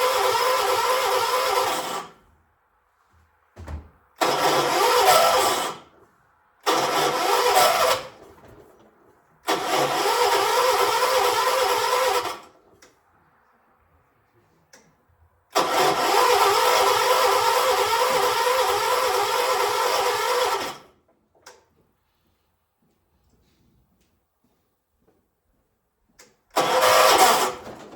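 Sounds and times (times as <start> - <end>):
engine starter cranking: 0.0 - 2.2, 4.2 - 6.0, 6.6 - 12.9, 15.5 - 21.0, 26.5 - 27.9.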